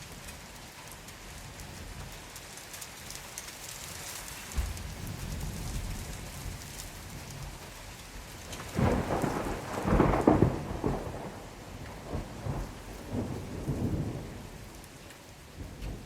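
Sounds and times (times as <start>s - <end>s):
steady rain: 0.0s - 16.0s
thunder rolling: 4.6s - 7.7s, 8.5s - 14.7s.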